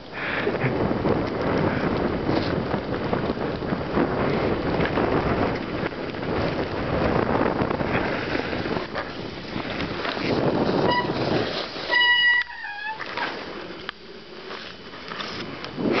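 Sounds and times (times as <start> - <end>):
wind buffeting microphone: 0.0 - 16.0
horn-like tone bending down: 10.8 - 11.3, 11.9 - 13.1.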